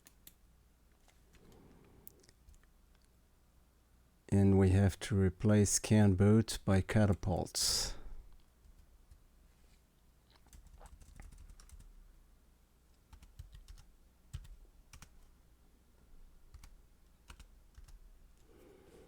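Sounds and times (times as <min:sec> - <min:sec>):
faint keyboard typing: 0:00.0 - 0:03.1, 0:08.3 - 0:09.3, 0:10.3 - 0:12.1, 0:12.9 - 0:15.4, 0:16.4 - 0:18.5.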